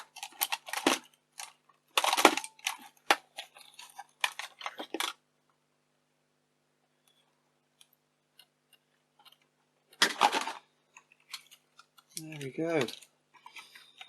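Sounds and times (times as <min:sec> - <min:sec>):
plastic parts clicking and scraping: 0:00.0 - 0:05.2, 0:07.1 - 0:14.0.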